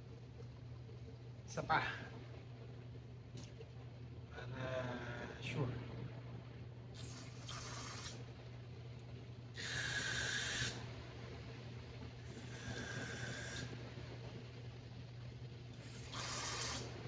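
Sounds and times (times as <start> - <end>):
aerosol spray hissing: 7.0 - 8.2, 15.9 - 16.9.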